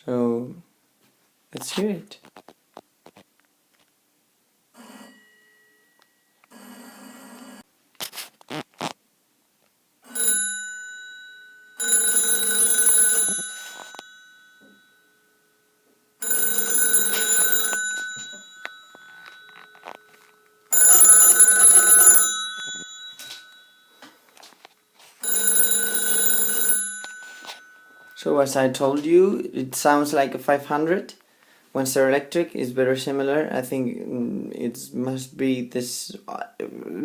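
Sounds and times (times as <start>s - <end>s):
payphone bells ringing: 10.1s - 15.4s, 16.2s - 24.5s, 25.2s - 29.4s.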